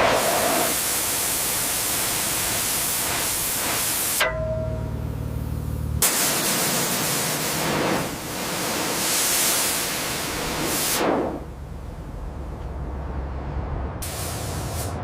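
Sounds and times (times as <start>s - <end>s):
high-pressure spray hissing: 0.0s - 4.2s, 6.0s - 11.4s, 14.0s - 15.0s.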